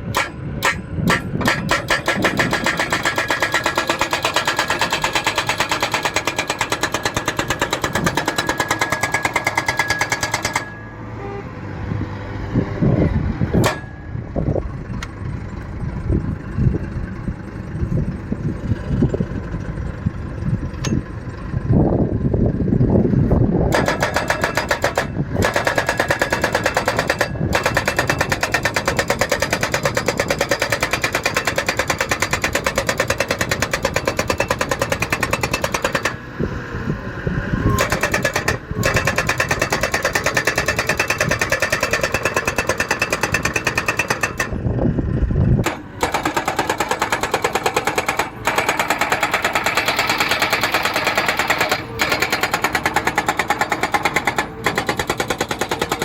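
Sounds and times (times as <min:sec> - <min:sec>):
post-driving hammer pounding: 0:00.0 - 0:10.8, 0:23.7 - 0:36.2, 0:45.6 - 0:56.0
machine engine running: 0:13.0 - 0:56.0.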